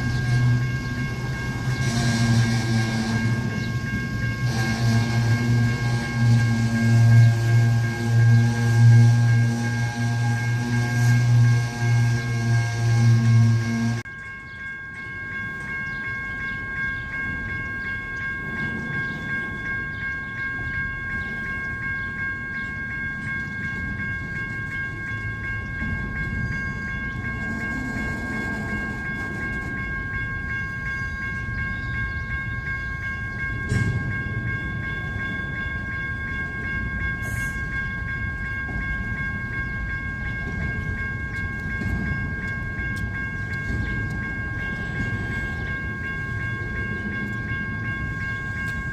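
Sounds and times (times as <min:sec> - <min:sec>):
freight train rolling past: 0:00.0 - 0:48.9
high-pitched ringing tone: 0:00.0 - 0:48.9
train wheel clicks: 0:21.5 - 0:48.9.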